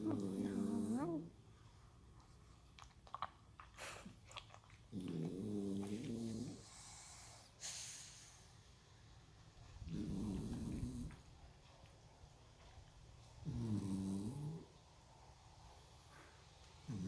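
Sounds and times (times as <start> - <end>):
dog snoring: 0.0 - 1.3, 4.9 - 7.5, 9.8 - 11.3, 13.4 - 14.8.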